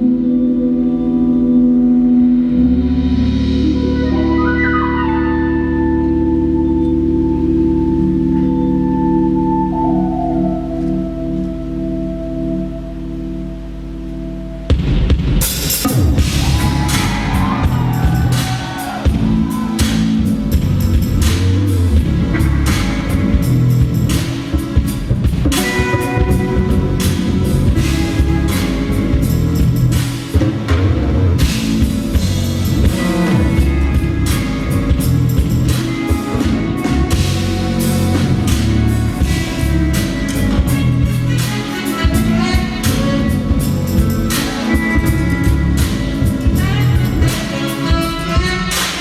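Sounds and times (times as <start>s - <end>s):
jazz fusion band playing: 0.0s - 49.0s
drum kit hits: 14.7s - 49.0s.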